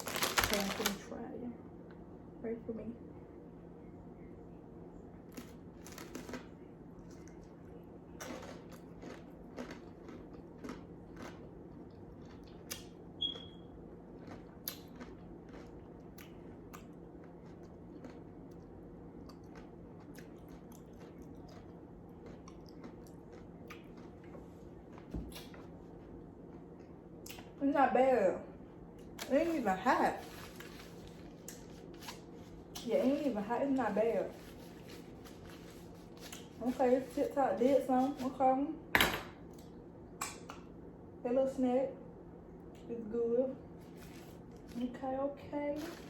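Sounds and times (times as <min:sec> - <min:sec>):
person chewing with crunches: 0:05.3 - 0:27.5, 0:30.2 - 0:36.8.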